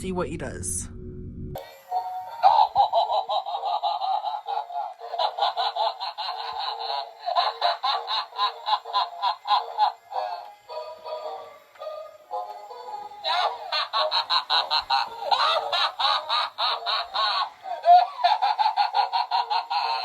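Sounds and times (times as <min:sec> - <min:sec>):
toy clown laughter from speaker: 0:01.6 - 0:20.0.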